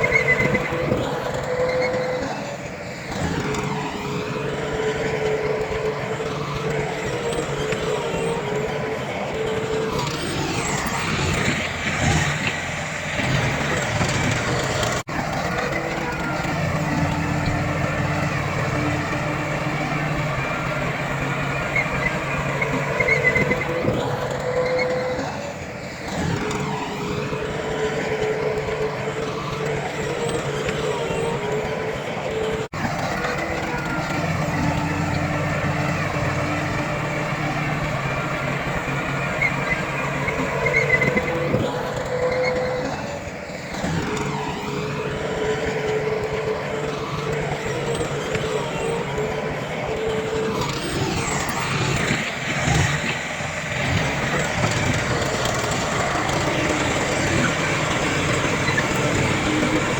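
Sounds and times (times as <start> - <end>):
heavy diesel machinery running: 0.0 - 59.9.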